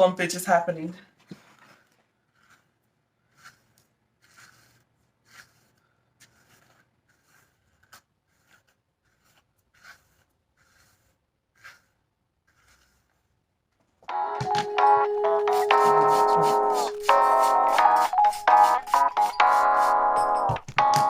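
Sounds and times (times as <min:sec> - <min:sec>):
brush strokes through wet hair: 0:03.3 - 0:13.3.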